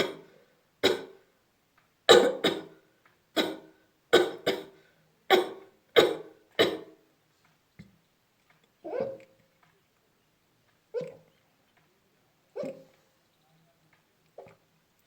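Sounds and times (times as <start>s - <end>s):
person coughing: 2.1s - 2.7s, 4.2s - 4.7s, 5.3s - 6.9s.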